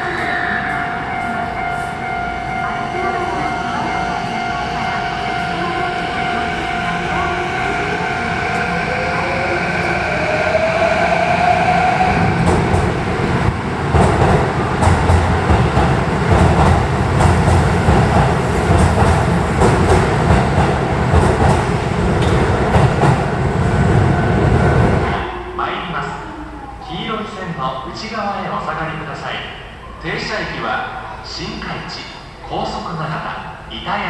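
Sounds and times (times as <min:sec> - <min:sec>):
train wheels rumbling on rails: 0:00.0 - 0:25.2
train traction motor whine: 0:03.7 - 0:18.7.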